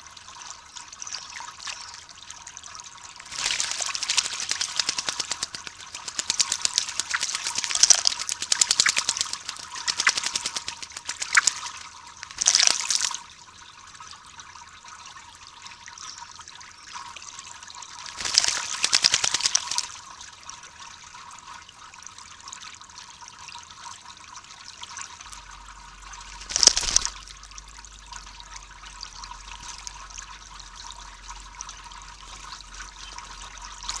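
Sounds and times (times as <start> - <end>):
bird splashing in water: 3.2 - 13.2, 17.9 - 20.0, 26.0 - 27.5, 29.5 - 30.3, 32.2 - 34.0.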